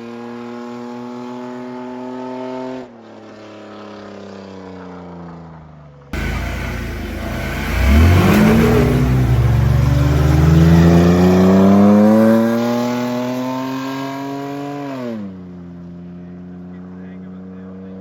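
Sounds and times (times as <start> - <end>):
engine accelerating hard: 6.2 - 14.5.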